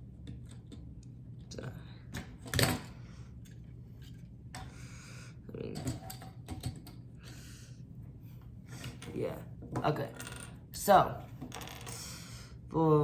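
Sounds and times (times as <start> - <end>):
plastic toys clicking and clattering: 5.7 - 7.0.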